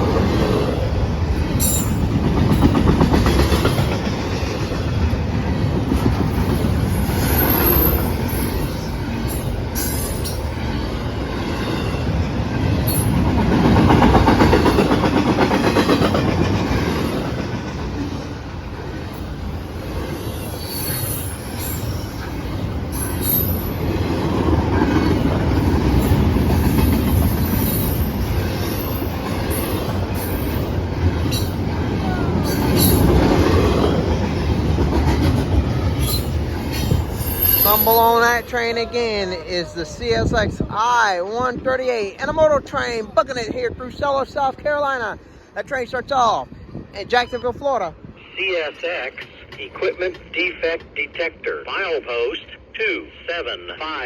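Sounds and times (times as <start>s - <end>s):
freight train wheels rumbling: 0.0s - 51.6s
high-pitched wheel squeals: 20.2s - 22.3s, 36.0s - 38.1s.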